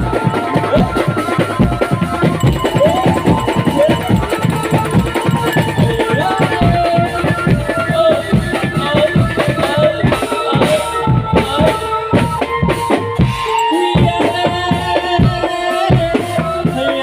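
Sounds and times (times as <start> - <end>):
fast dense drumming: 1.7 - 8.2
sliding melody line: 2.3 - 7.7, 13.2 - 15.0.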